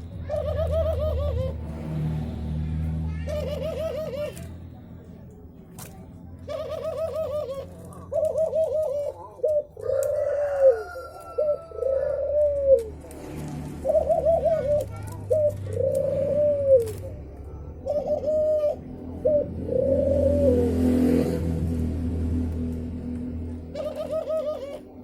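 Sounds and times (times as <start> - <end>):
bird cooing: 0.0 - 1.6, 3.1 - 4.5, 6.4 - 13.0, 13.8 - 21.5, 23.7 - 25.0.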